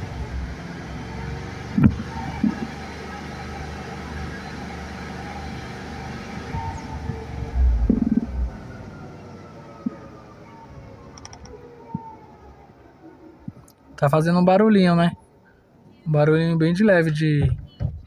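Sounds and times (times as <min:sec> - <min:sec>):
car driving drone: 0:00.0 - 0:13.6.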